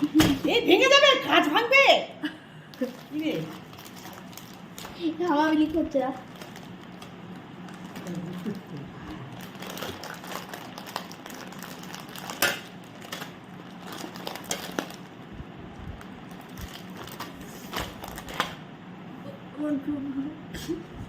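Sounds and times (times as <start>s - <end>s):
faint steady hum: 0.0s - 21.0s
plastic packet crinkling: 2.7s - 15.2s, 15.9s - 18.6s.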